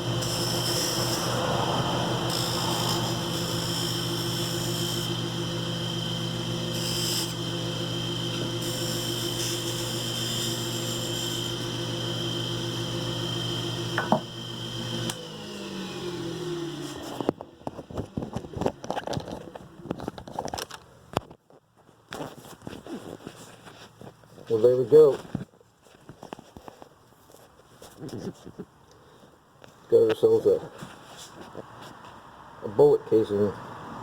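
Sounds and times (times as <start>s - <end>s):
wood lathe motor running: 0.0s - 17.4s.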